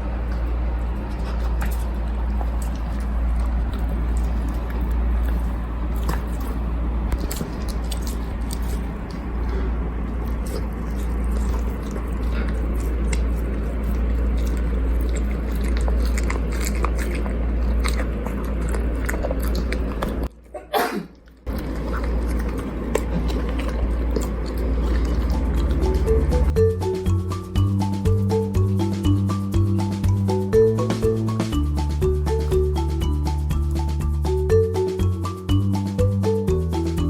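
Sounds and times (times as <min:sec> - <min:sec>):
dog chewing wetly: 0:00.0 - 0:20.5, 0:21.1 - 0:26.6
steady low hum: 0:00.0 - 0:37.0.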